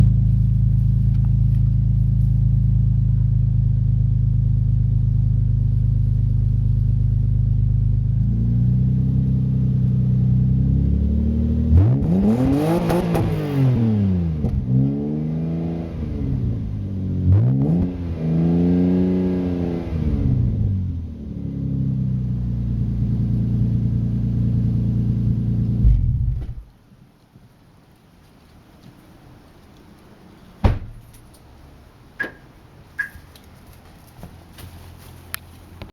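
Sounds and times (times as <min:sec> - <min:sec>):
car engine idling and revving: 0:00.0 - 0:26.7.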